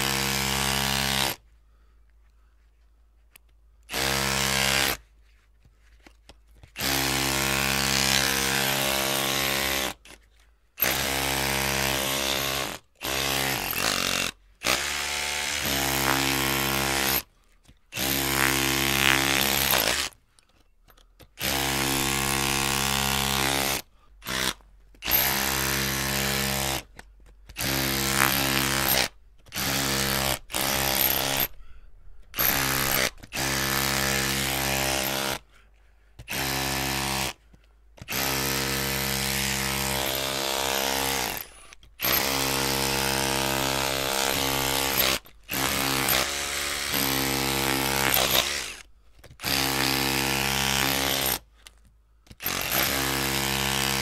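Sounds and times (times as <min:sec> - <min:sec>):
electric drill whining: 0:21.4 - 0:26.8, 0:27.6 - 0:31.6, 0:32.4 - 0:35.4, 0:38.1 - 0:51.4, 0:52.4 - 0:54.0.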